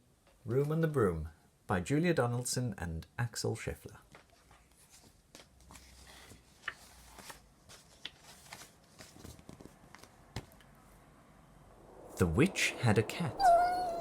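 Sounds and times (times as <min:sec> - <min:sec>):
paper pages rustling: 0:04.1 - 0:10.5.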